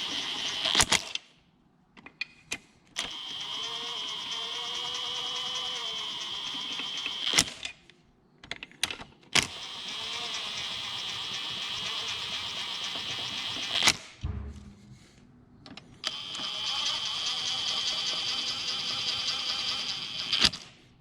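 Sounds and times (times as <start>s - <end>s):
small electric motor whirring: 3.0s - 7.5s, 9.4s - 13.8s, 16.1s - 20.8s.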